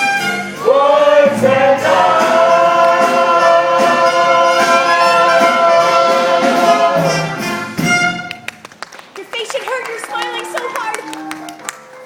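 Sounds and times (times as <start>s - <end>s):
instrumental accompaniment: 0.0s - 8.8s.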